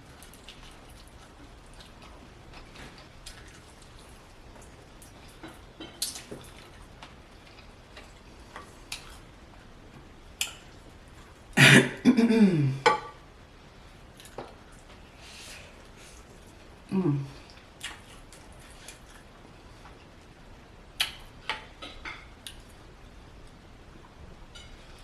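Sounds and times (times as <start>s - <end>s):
person chewing: 0.1s - 9.3s, 17.4s - 19.4s
throat clearing: 11.6s - 12.8s
mouth clicks and smacks: 21.0s - 21.2s.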